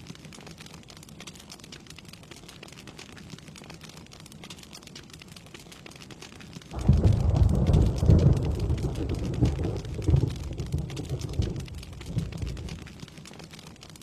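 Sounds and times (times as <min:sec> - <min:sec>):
steady rain falling: 0:00.0 - 0:14.0
thunderclap rolling rumble: 0:06.7 - 0:13.0.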